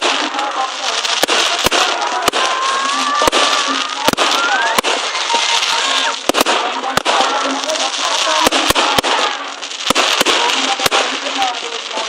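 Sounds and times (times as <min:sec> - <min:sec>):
firework bangs: 0:00.0 - 0:12.0
fireworks crackling: 0:00.0 - 0:12.0
rising firework whistle: 0:02.2 - 0:06.2.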